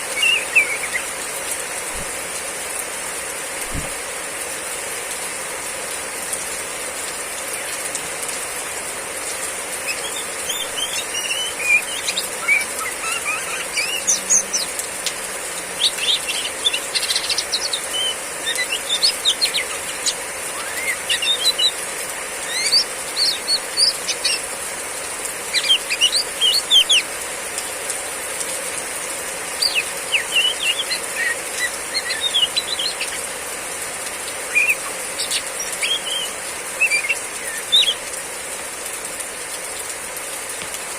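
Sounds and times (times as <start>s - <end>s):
heavy rain hiss: 0.0s - 40.9s
magpie-robin chattering chirps: 9.9s - 14.8s.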